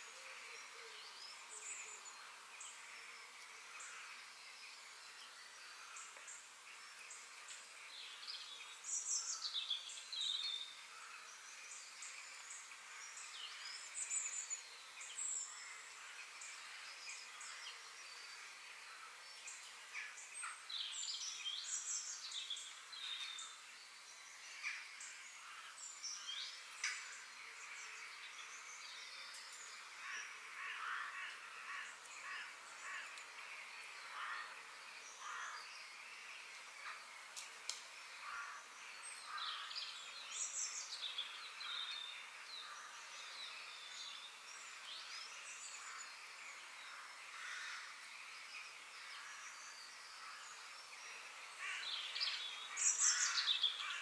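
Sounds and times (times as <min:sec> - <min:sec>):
birds singing: 0:37.9 - 0:54.0.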